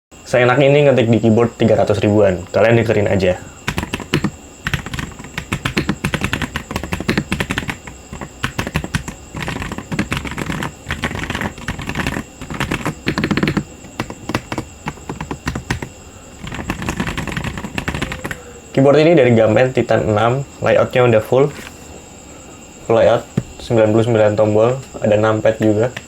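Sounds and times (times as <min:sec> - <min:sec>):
mechanical keyboard typing: 0:03.6 - 0:18.4.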